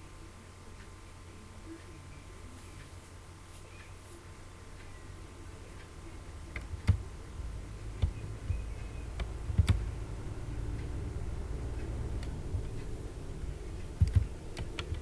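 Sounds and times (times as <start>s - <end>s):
low steady hum: 0.0s - 15.0s
computer mouse and keys clicking: 5.7s - 7.1s, 7.9s - 10.0s, 10.7s - 15.0s.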